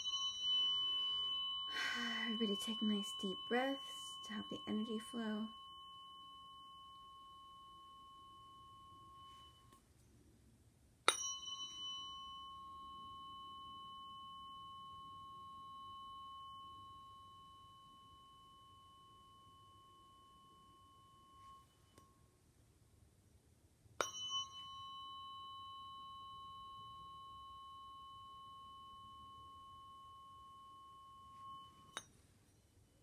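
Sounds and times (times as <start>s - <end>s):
tuning fork ringing: 0.0s - 10.3s, 11.0s - 22.5s, 23.9s - 33.0s
tuning fork struck with a tap: 11.1s - 22.2s, 24.0s - 32.2s.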